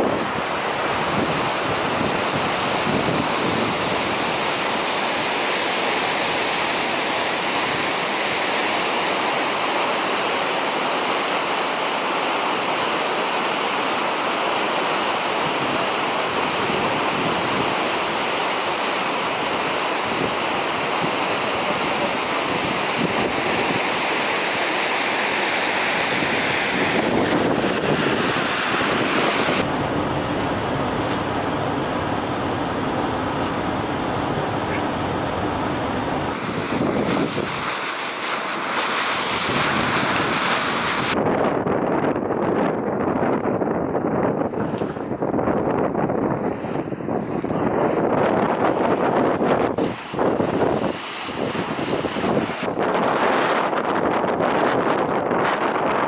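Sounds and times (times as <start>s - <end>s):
waterfall rushing: 0.0s - 41.2s, 49.8s - 52.8s.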